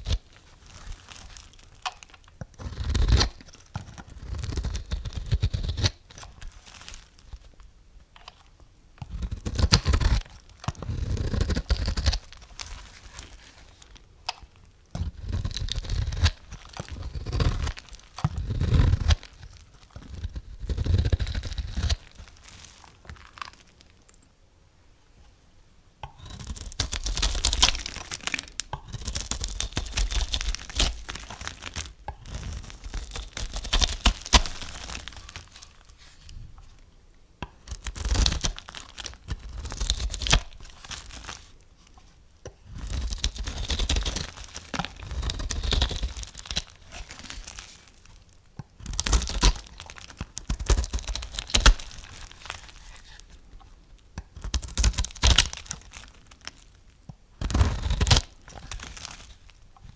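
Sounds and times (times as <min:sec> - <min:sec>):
knife cutting through soap: 0:00.0 - 0:07.5, 0:09.0 - 0:23.6, 0:57.4 - 0:59.2.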